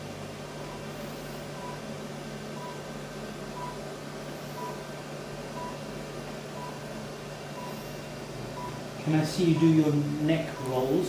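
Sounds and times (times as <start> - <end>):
steady low hum: 0.0 - 11.0
short electronic beeps: 5.6 - 5.8, 8.6 - 8.8, 9.5 - 9.8.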